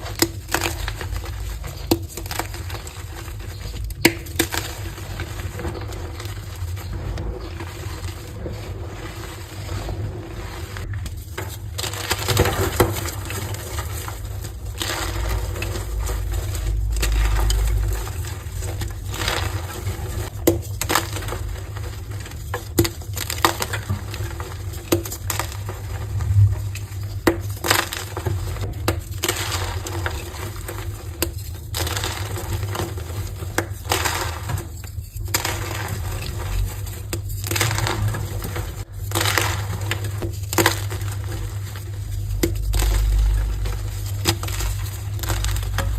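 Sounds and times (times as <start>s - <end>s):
chalk crunching and crumbling: 0.0s - 45.9s.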